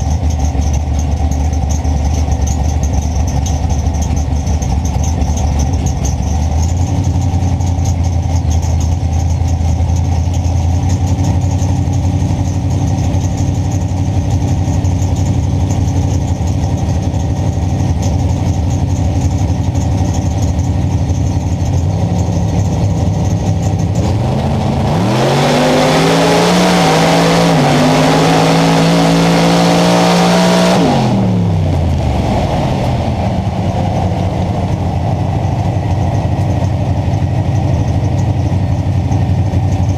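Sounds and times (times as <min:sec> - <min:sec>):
race car engine revving: 0:21.2 - 0:38.2.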